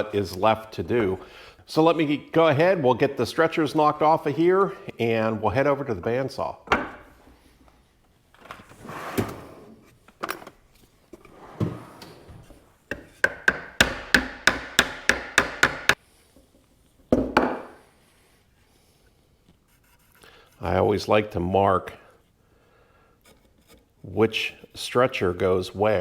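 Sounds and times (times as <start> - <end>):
hammer knocking on wood: 12.9 - 16.0
wood scraping: 19.6 - 20.9.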